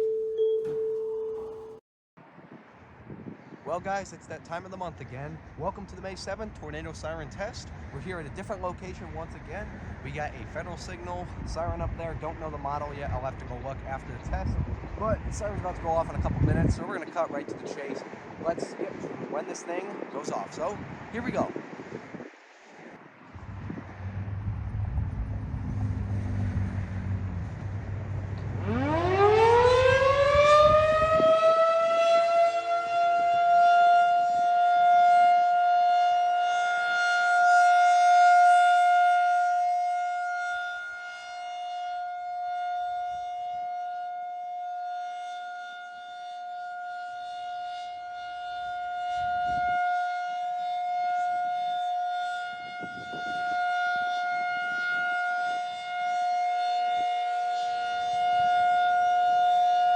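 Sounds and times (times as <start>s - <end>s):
rotating siren wailing: 0.0s - 1.8s, 28.5s - 59.9s.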